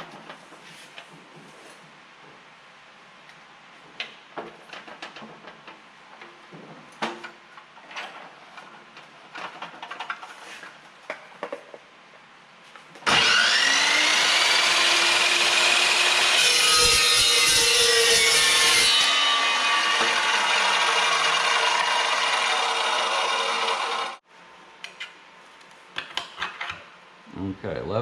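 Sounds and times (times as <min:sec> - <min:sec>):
chop saw cutting steel: 0:13.0 - 0:24.2.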